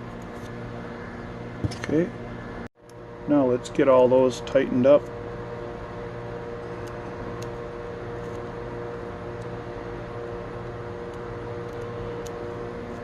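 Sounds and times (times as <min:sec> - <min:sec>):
steady machine hum: 0:00.0 - 0:13.0.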